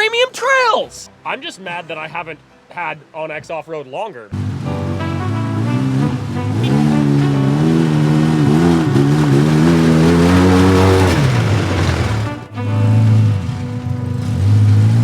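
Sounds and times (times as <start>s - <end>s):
truck engine revving under load: 4.3s - 15.0s.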